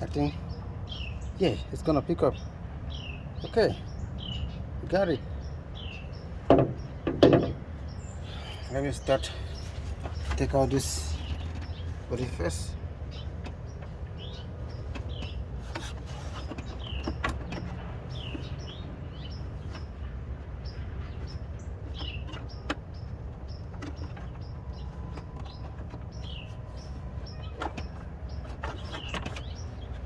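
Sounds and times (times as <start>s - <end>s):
small birds chirping: 0.0s - 30.0s
clicks and knocks of car parts: 6.1s - 8.4s, 9.2s - 12.0s, 12.9s - 30.0s.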